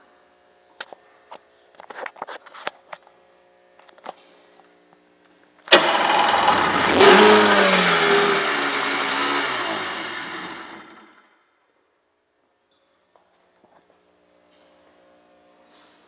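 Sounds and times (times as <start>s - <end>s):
two-stroke engine starting and revving: 5.7s - 11.2s.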